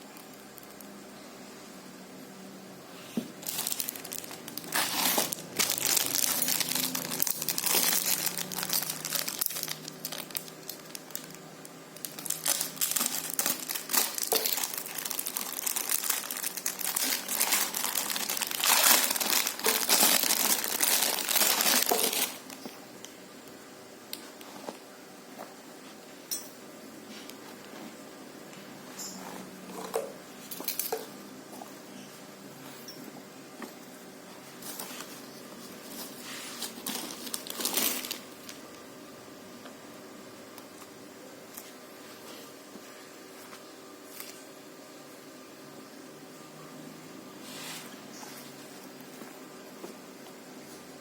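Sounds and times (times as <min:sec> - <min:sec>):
packaging crinkling: 0:03.4 - 0:22.7, 0:35.8 - 0:38.8.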